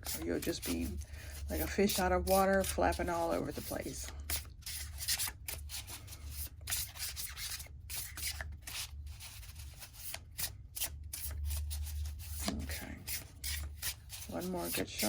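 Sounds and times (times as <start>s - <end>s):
cards being shuffled: 3.4s - 15.0s.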